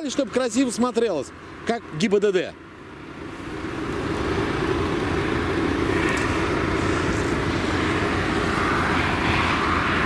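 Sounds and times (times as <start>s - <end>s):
vehicle engine running: 2.6s - 10.0s.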